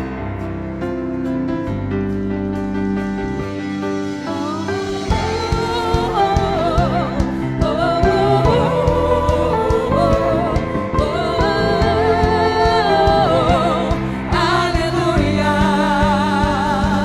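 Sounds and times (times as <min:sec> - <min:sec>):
gospel band playing: 0:00.0 - 0:17.0
people singing with vibrato: 0:04.0 - 0:17.0.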